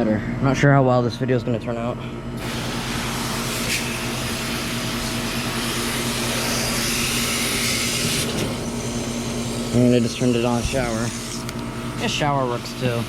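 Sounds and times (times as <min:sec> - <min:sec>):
steady low hum: 0:00.0 - 0:13.0
garden hose spray hissing: 0:02.4 - 0:11.8.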